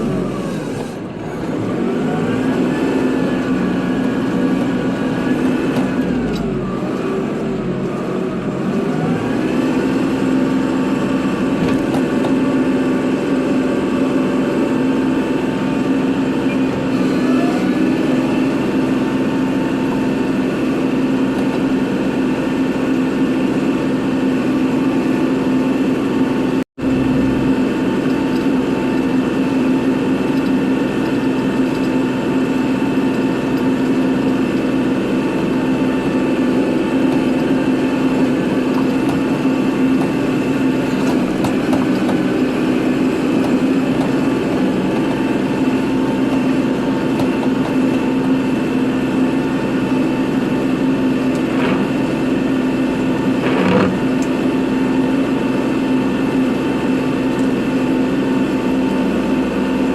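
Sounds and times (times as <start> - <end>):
tractor diesel engine running: 0.0 - 59.9
brief clunks: 53.4 - 54.0.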